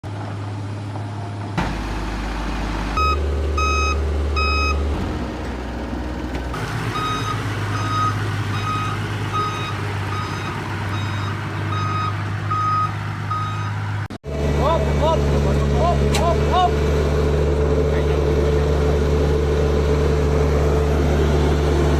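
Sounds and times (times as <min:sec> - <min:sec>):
diesel engine running: 0:00.0 - 0:21.9
reversing alarm beeping: 0:03.0 - 0:04.8, 0:06.6 - 0:13.8.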